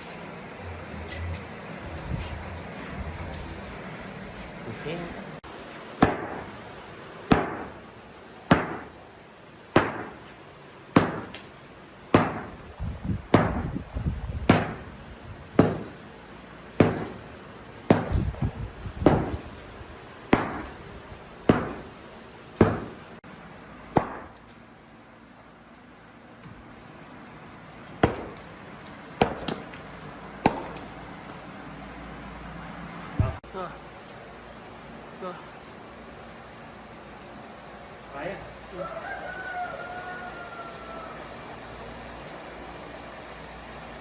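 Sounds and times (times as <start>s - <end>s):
tool striking wood: 8.5s - 8.9s, 15.6s - 16.0s, 16.8s - 17.2s, 20.3s - 20.8s, 21.5s - 21.9s, 22.6s - 23.0s, 24.0s - 24.4s, 28.0s - 28.4s.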